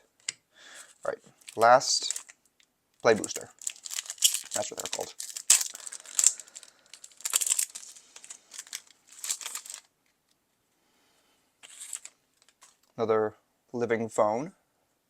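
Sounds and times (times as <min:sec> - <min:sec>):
wrapper crinkling and tearing: 0:01.4 - 0:02.4, 0:03.1 - 0:09.9, 0:11.6 - 0:12.9.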